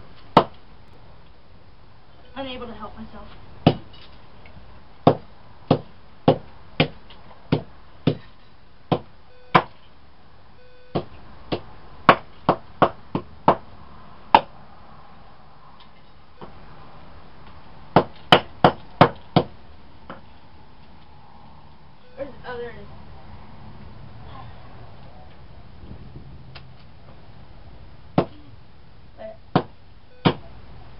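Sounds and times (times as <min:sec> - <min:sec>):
hammer striking phone: 0:08.9 - 0:09.7, 0:10.9 - 0:13.6, 0:29.6 - 0:30.4.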